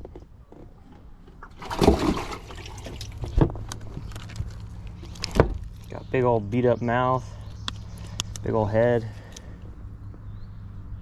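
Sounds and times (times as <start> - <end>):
water splashing: 1.4 - 3.3.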